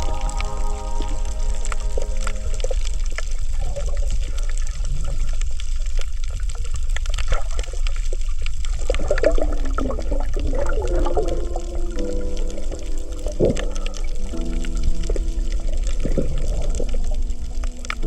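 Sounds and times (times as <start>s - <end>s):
crackle of small clicks: 0.0s - 18.0s
low underwater rumble: 0.0s - 18.0s
warbling gurgles: 0.0s - 18.0s.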